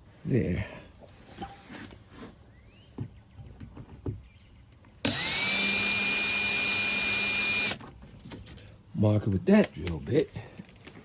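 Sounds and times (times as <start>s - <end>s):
electric drill whining: 5.1s - 7.8s.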